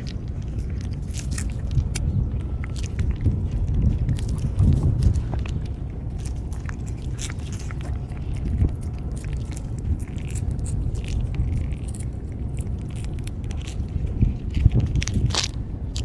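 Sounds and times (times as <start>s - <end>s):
cats chewing food: 0.0s - 16.0s
steady low rumble: 0.0s - 16.0s.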